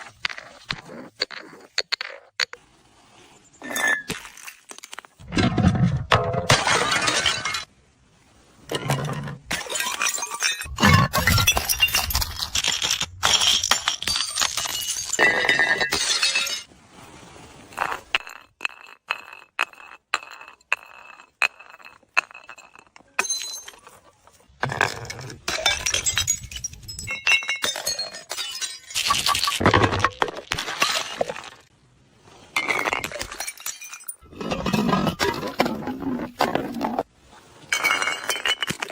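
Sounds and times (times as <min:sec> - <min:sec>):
glass clinking and ringing: 0:03.6 - 0:04.2, 0:13.3 - 0:16.7, 0:21.4 - 0:24.0, 0:25.5 - 0:29.2
glass bottles smashing: 0:06.2 - 0:07.7, 0:09.5 - 0:16.7, 0:21.7 - 0:24.0, 0:25.4 - 0:31.6, 0:32.6 - 0:35.5, 0:37.7 - 0:38.9
glass shards crunching: 0:10.2 - 0:16.6.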